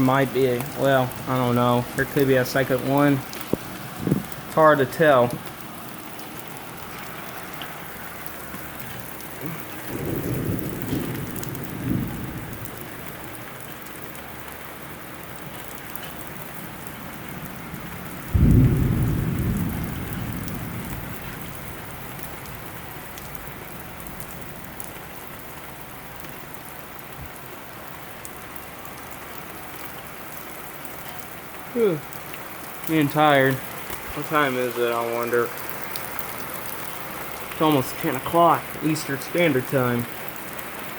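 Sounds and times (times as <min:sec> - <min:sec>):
thunder rumbling: 0:00.0 - 0:26.2
hard rain: 0:00.0 - 0:40.9
loud thunder clap: 0:09.9 - 0:12.9, 0:18.2 - 0:22.4.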